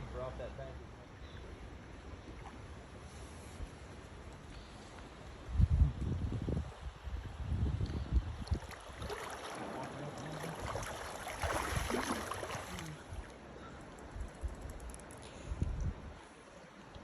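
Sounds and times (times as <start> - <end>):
river water splashing: 1.4 - 5.3, 8.4 - 15.3.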